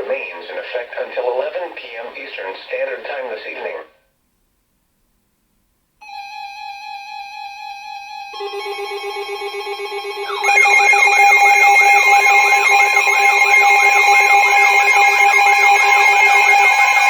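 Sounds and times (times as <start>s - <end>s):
steady electronic alarm tone: 6.0s - 17.0s
warbling siren-like sweep: 8.5s - 17.0s.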